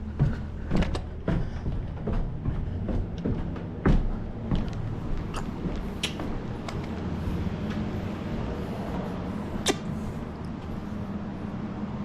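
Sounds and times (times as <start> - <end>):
knocks: 0.0 - 6.4
low steady rumble: 0.0 - 12.0.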